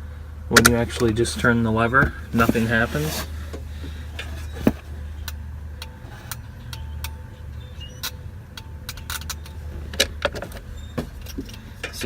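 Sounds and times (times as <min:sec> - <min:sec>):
low steady car hum: 0:00.0 - 0:12.0.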